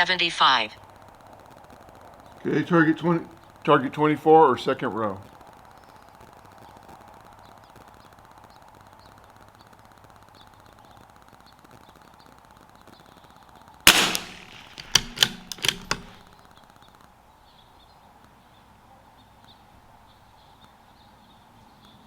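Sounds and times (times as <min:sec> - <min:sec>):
rifle bolt metallic clicks: 0:13.9 - 0:16.3
rifle shot: 0:13.9 - 0:16.3.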